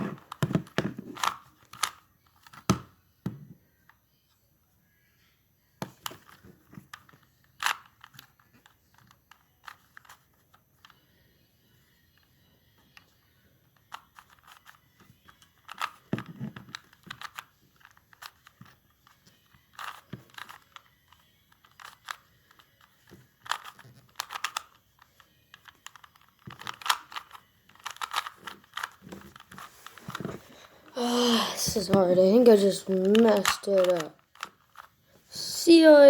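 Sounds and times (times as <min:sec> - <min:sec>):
puzzle cube layers clicking: 0:13.8 - 0:36.0.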